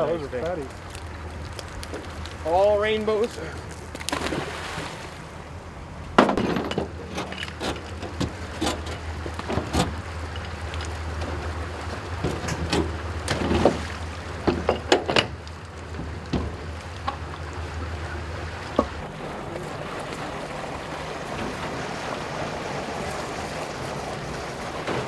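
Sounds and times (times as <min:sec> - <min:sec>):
steady low hum: 0:00.0 - 0:25.0
fish splashing: 0:03.6 - 0:05.6.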